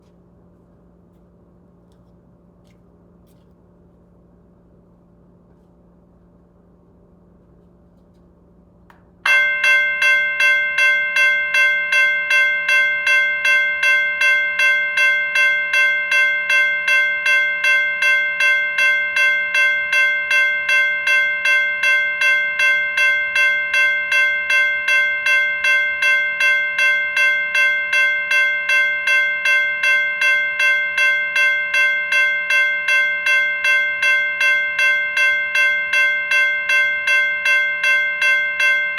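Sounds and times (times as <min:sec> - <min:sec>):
electronic bell ringing: 0:09.3 - 0:38.9.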